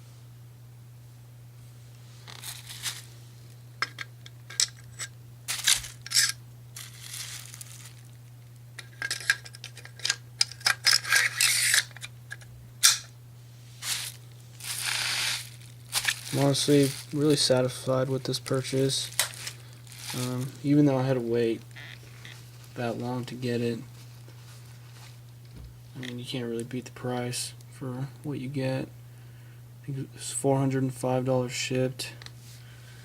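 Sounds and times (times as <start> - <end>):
plastic packaging rustling: 2.1 - 3.2, 3.8 - 8.2, 13.8 - 25.5
small metal parts clicking: 3.8 - 7.3, 8.8 - 13.1.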